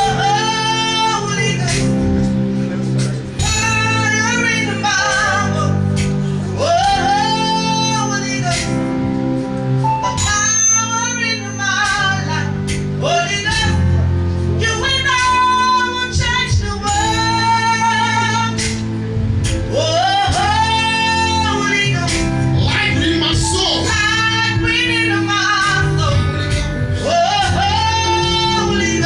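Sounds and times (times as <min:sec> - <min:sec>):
sustained instrumental accompaniment: 0:00.0 - 0:29.0
woman singing: 0:14.6 - 0:18.8, 0:19.7 - 0:29.0.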